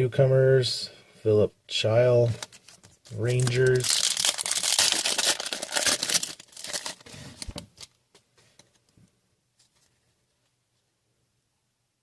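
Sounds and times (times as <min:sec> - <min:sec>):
foil wrapper crinkling and tearing: 0:02.4 - 0:07.9.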